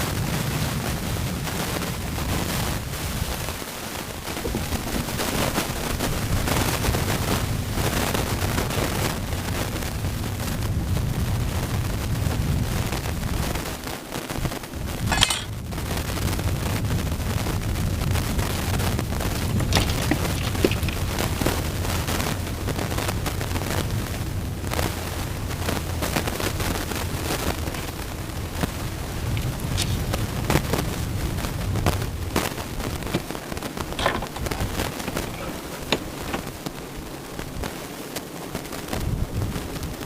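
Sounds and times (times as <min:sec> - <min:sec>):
wind buffeting microphone: 0:00.0 - 0:40.0.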